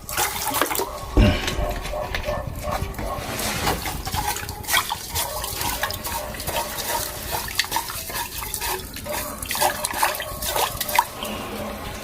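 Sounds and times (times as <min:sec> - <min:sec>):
water sloshing in a pot: 0:00.0 - 0:12.0.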